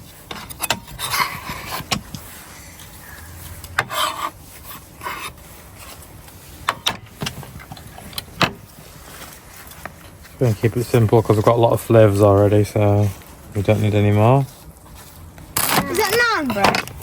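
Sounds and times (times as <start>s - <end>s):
utensil scraping in bowl: 0.4s - 6.7s.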